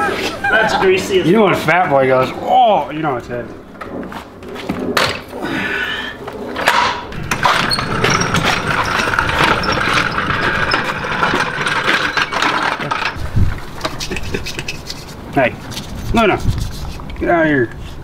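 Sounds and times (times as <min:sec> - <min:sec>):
rapid mechanical clicking and rattling: 0:07.2 - 0:13.2.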